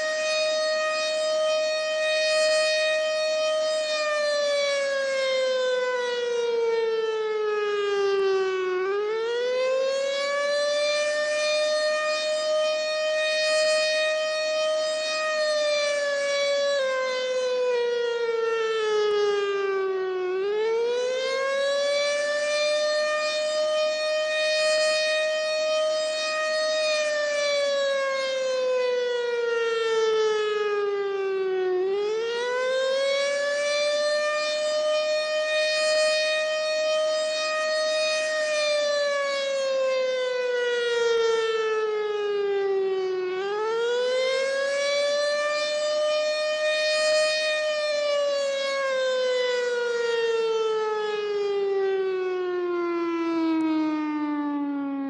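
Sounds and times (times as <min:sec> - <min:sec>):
outdoor warning siren wailing: 0:00.0 - 0:55.0.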